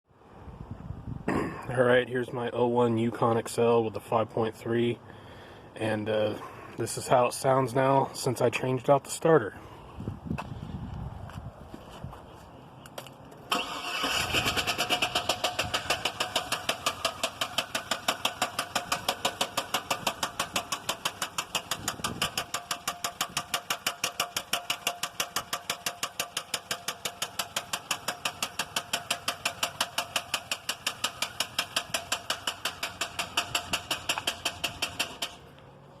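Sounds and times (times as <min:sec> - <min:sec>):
engine running: 0:13.3 - 0:36.0
sharp regular engine knock: 0:14.6 - 0:35.4.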